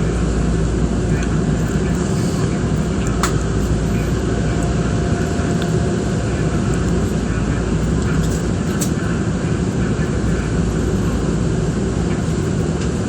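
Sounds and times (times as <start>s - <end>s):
sharp click: 1.2s - 4.7s, 7.8s - 9.0s.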